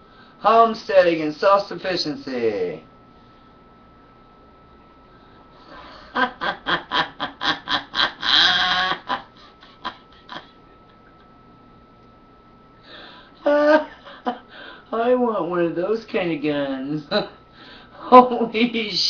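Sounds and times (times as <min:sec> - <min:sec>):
man laughing: 0:05.6 - 0:11.3, 0:13.4 - 0:14.7.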